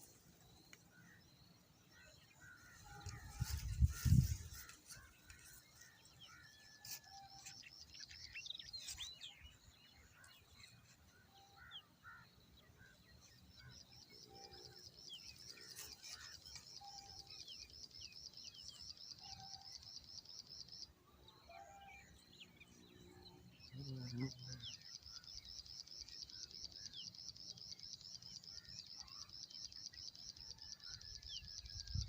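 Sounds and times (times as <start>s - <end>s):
faint birdsong chirps: 0.0s - 32.0s.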